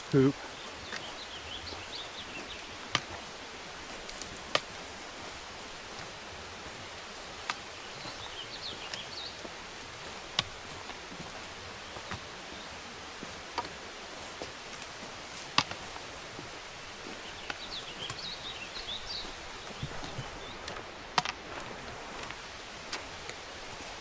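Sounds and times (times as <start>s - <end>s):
small birds chirping: 0.0s - 24.0s
steady hiss: 0.0s - 24.0s.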